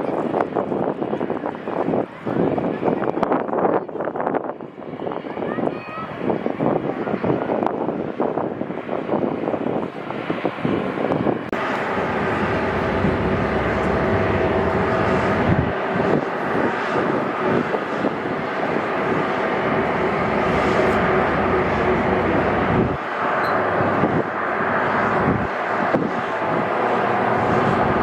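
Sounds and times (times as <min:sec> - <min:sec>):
jet engines rushing and whining: 0:00.0 - 0:28.0.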